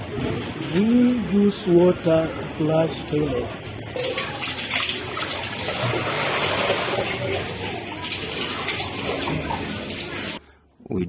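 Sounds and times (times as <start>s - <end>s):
water rushing and splashing: 4.0s - 10.4s.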